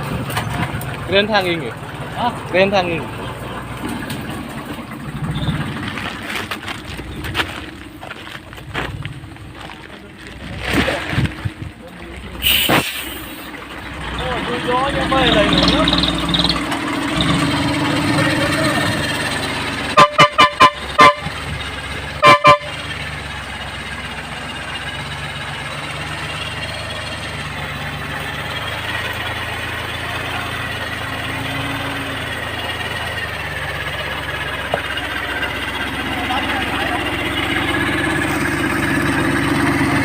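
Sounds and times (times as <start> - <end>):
tractor engine running: 0.0 - 40.0
vehicle horn short blasts: 19.9 - 21.4, 22.2 - 22.8.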